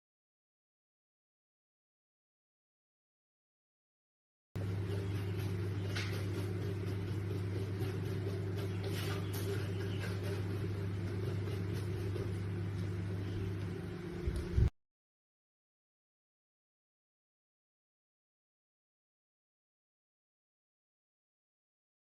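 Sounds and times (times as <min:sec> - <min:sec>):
steady low hum: 0:04.6 - 0:14.7.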